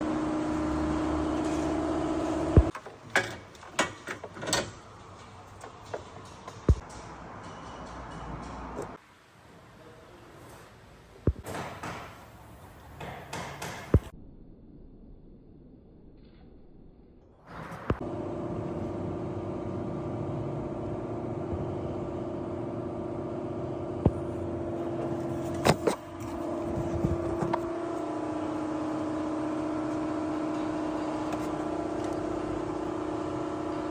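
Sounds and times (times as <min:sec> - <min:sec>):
car engine running: 0:00.0 - 0:02.7, 0:18.0 - 0:33.9
steady mechanical hum: 0:00.0 - 0:09.0, 0:17.5 - 0:33.9
sharp clicks and knocks: 0:02.6 - 0:09.0.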